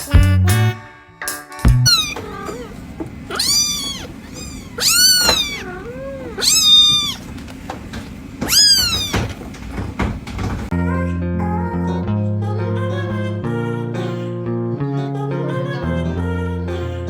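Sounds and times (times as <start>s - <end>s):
cat meowing: 1.9s - 7.4s, 8.4s - 9.4s.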